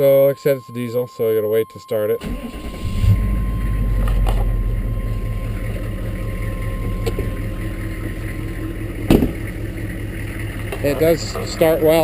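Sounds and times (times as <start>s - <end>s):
diesel engine idling: 2.2s - 12.0s
thump: 9.0s - 9.5s.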